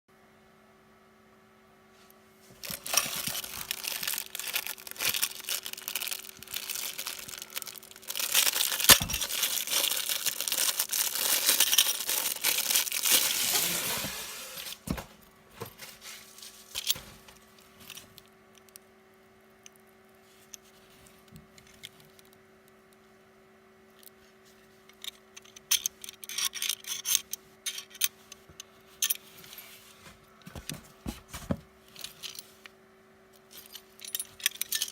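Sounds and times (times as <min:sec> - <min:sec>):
faint steady hum: 0:00.1 - 0:34.9
handling clicks and rustles: 0:02.4 - 0:18.8, 0:24.9 - 0:32.7, 0:33.4 - 0:34.9
plastic packaging tearing: 0:02.5 - 0:15.0.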